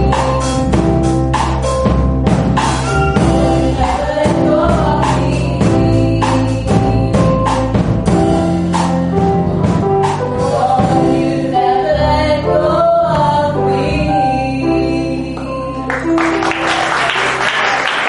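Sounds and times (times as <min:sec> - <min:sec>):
percussion strokes keeping beat: 0:00.0 - 0:11.8
instrumental accompaniment: 0:00.0 - 0:18.0
gospel singing voices: 0:03.2 - 0:07.8, 0:10.4 - 0:17.4.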